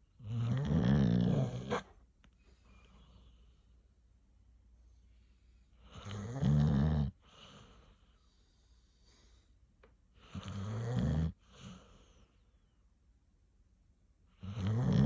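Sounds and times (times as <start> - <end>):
dog snoring: 0.2 - 1.9, 5.8 - 8.0, 10.2 - 12.0, 14.4 - 15.0.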